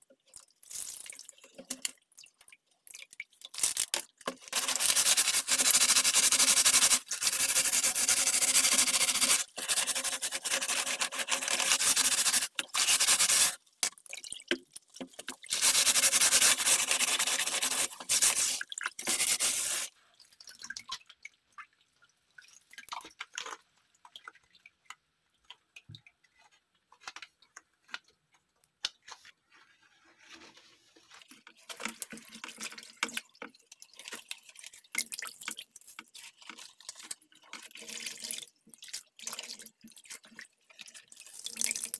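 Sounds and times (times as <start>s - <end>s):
water dripping: 0.0s - 4.4s, 13.6s - 15.5s, 18.0s - 19.0s, 19.6s - 29.1s, 31.6s - 41.9s
water running from a tap: 15.5s - 19.9s.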